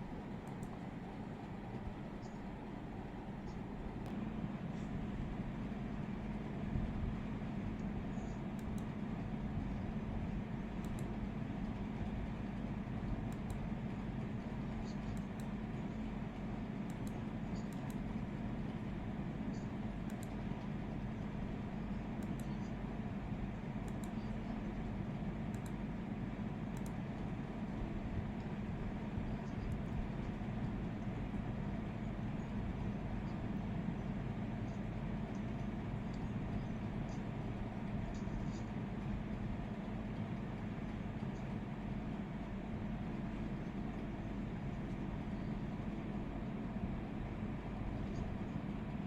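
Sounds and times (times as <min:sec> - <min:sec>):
steady low hum: 0:00.0 - 0:49.0
faint sharp clicks: 0:00.4 - 0:00.9, 0:08.5 - 0:08.9, 0:10.8 - 0:11.8, 0:19.6 - 0:20.7, 0:22.2 - 0:22.8, 0:23.8 - 0:24.3, 0:25.5 - 0:25.8, 0:26.7 - 0:27.3.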